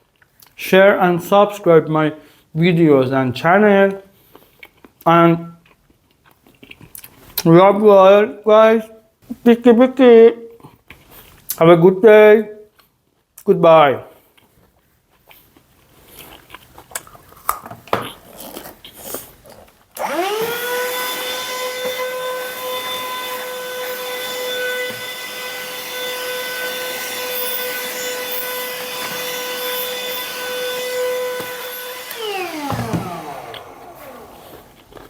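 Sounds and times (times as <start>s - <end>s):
small appliance motor whine: 20.0s - 34.9s.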